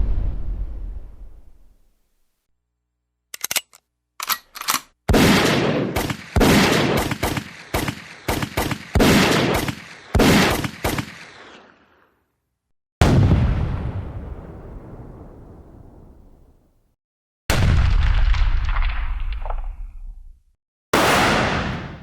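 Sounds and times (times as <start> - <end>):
sharp clicks and cracks: 3.3 - 5.0
gunshots with echo: 21.0 - 22.0.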